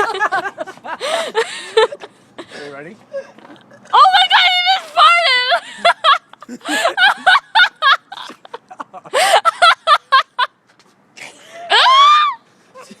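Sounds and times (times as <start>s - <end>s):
young women giggling: 5.5s - 10.5s.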